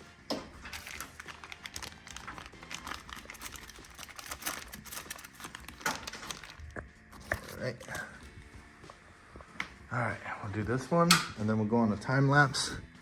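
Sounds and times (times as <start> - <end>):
packaging crinkling: 0.6 - 7.6.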